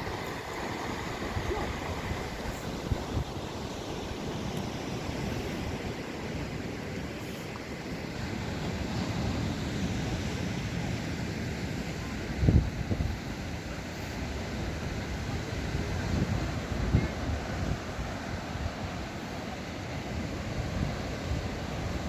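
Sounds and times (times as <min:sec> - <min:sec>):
wind buffeting microphone: 0:00.0 - 0:06.2, 0:12.3 - 0:13.4
surf breaking on a beach: 0:00.0 - 0:22.0.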